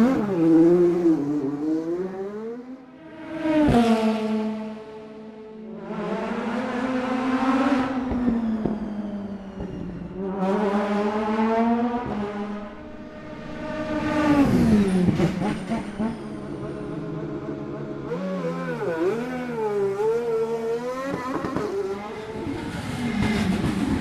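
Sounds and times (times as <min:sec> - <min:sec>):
race car passing by: 0:00.0 - 0:24.0
race car engine surging: 0:05.8 - 0:24.0.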